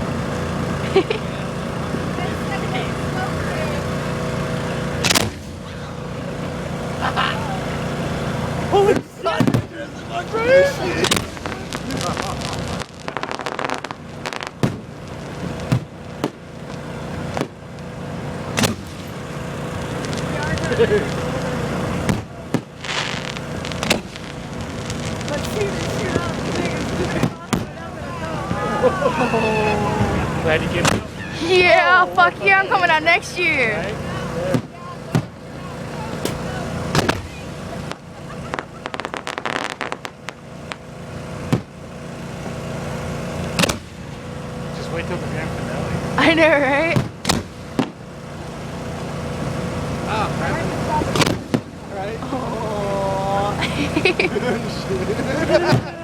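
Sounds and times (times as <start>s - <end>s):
firework crackle: 0.0s - 31.8s, 32.5s - 56.0s
rushing rumble: 0.0s - 56.0s
steady low hum: 0.0s - 56.0s
firework shells bursting: 5.0s - 31.4s, 34.5s - 44.8s, 46.8s - 51.9s.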